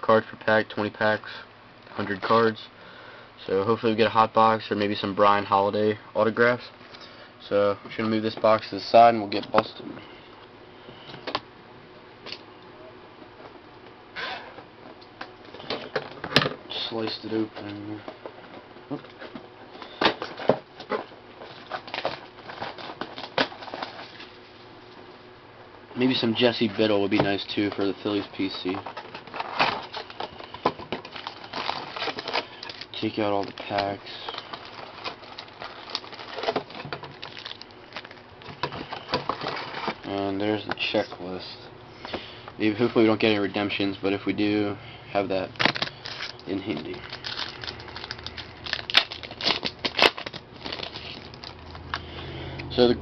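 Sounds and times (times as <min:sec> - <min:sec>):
foil packs rustling and crinkling: 0:19.2 - 0:24.8, 0:26.0 - 0:41.4, 0:42.0 - 0:52.2.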